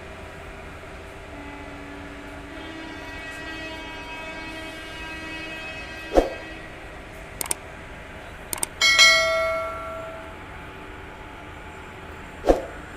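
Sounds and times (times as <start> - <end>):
faint clicks: 7.4 - 7.6, 8.5 - 8.8
bell-like metallic ringing strike: 8.8 - 10.4.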